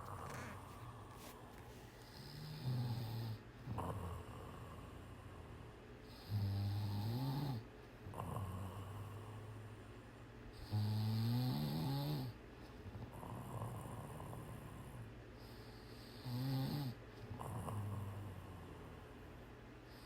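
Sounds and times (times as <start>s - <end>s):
cat snoring: 0.0s - 1.3s, 2.1s - 7.6s, 8.2s - 9.4s, 10.6s - 12.4s, 13.1s - 15.0s, 15.7s - 19.0s.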